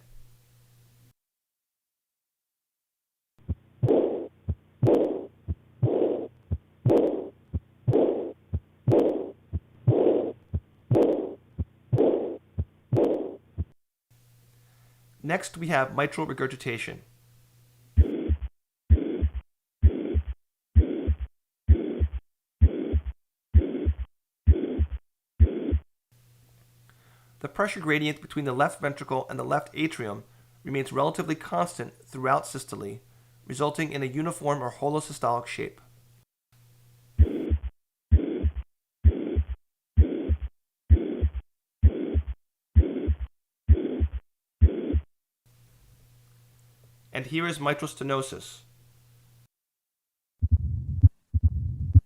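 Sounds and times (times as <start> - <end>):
heart murmur: 3.4 - 13.8, 18.0 - 25.9, 37.2 - 45.1, 50.4 - 52.0
heartbeat: 3.4 - 13.8, 18.0 - 25.9, 37.2 - 45.1, 50.4 - 52.0.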